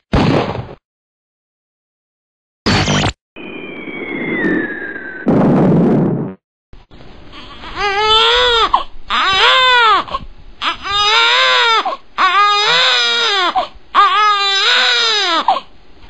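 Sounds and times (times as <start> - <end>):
baby crying: 7.4 - 15.7.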